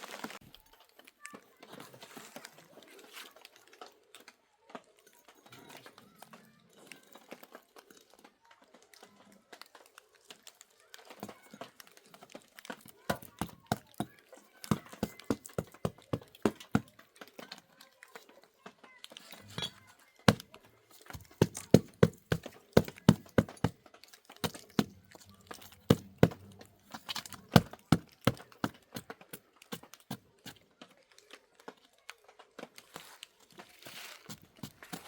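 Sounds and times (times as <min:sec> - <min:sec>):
sharp knocks and taps: 0:13.1 - 0:17.0, 0:19.5 - 0:30.2.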